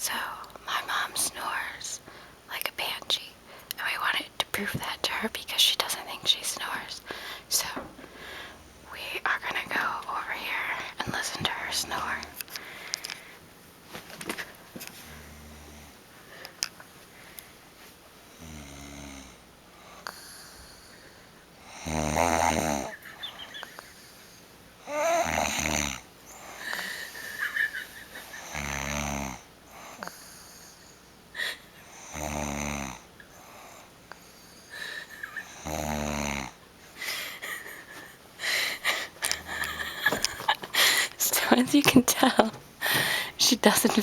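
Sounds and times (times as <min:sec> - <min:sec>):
woman snoring: 0:18.3 - 0:19.4, 0:21.7 - 0:23.0, 0:24.8 - 0:27.1, 0:28.3 - 0:30.2, 0:31.4 - 0:33.8, 0:34.7 - 0:36.6, 0:38.4 - 0:40.2.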